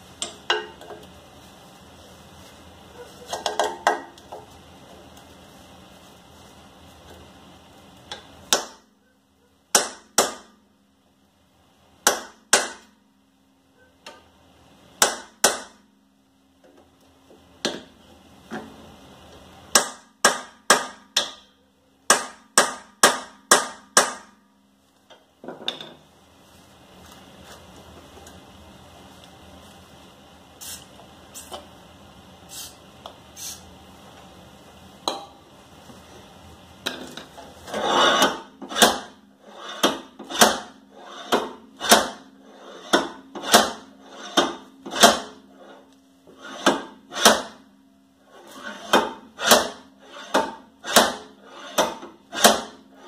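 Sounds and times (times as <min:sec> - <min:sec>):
sledgehammer striking wheel hub: 0:08.5 - 0:08.9, 0:09.7 - 0:10.6, 0:12.0 - 0:12.9, 0:15.0 - 0:15.8, 0:19.7 - 0:24.4, 0:38.0 - 0:42.3, 0:42.9 - 0:45.5, 0:46.5 - 0:47.6, 0:48.8 - 0:52.8.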